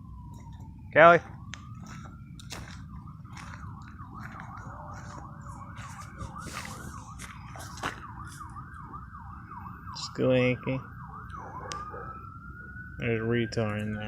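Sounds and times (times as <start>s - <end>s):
steady low rumble: 0.0s - 9.9s
siren in fast yelp: 0.0s - 14.0s.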